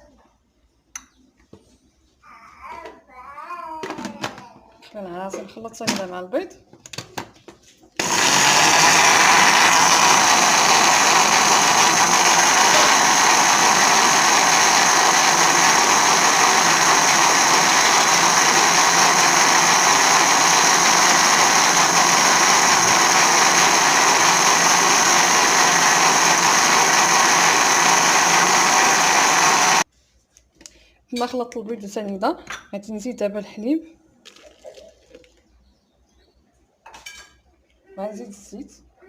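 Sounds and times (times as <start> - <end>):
electric mixer running: 8.0 - 29.9.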